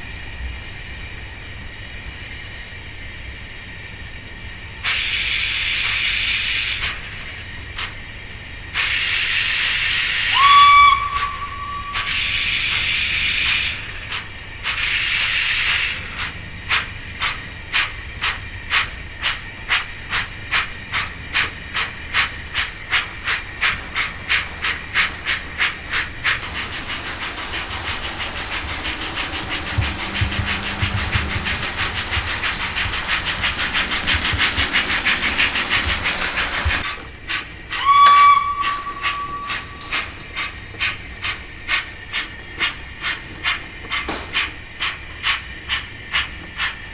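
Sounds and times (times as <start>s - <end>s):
rush of steam: 0.0s - 46.9s
steam exhaust chuffs: 0.0s - 46.9s
steam locomotive whistle: 8.8s - 16.2s, 22.0s - 36.9s, 37.6s - 41.0s.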